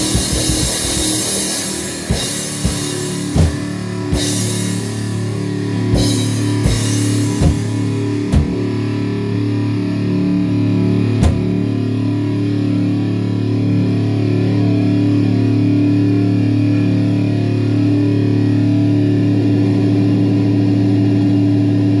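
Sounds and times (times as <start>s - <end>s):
drum hits: 0.0s - 1.3s, 2.0s - 4.8s, 5.9s - 8.7s, 11.2s - 11.6s
held electric guitar chord: 0.0s - 22.0s.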